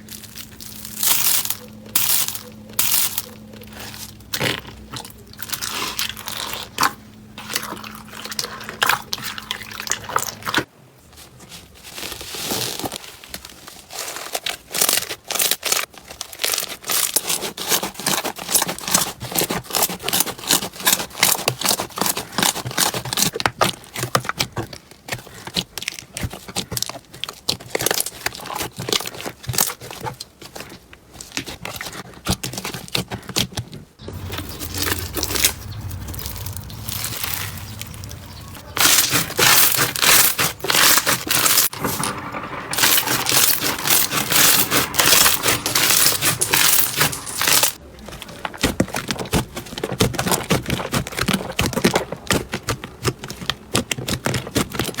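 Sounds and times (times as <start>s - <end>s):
crunchy slime crackling: 0.0s - 41.8s, 42.7s - 55.0s
low hum: 34.0s - 48.2s.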